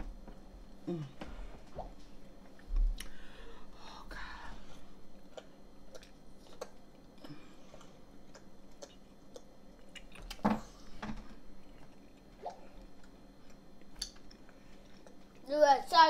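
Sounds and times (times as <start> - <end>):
close chewing with wet clicks: 5.2 - 10.4, 11.6 - 15.5.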